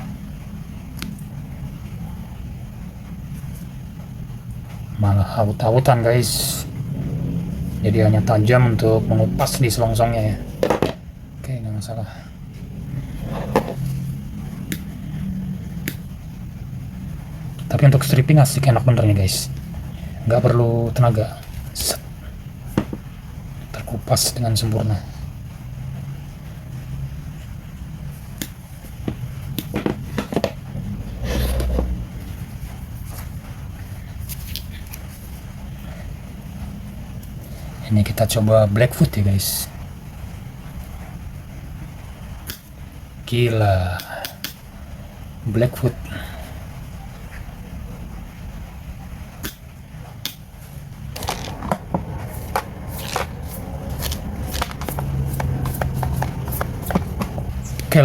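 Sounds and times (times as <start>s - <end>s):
cable rustling: 50.6s - 58.0s
low bump: 51.1s - 57.9s.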